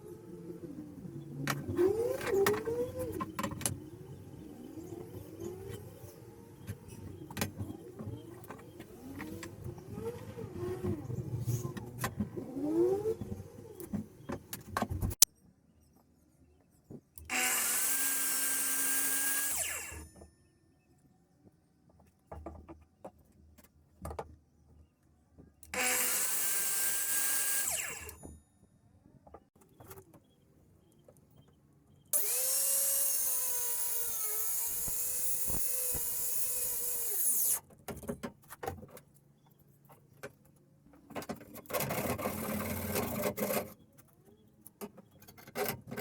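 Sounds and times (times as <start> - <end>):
power tool spinning up: 17.3 - 20.1, 25.7 - 28.3, 32.2 - 37.6.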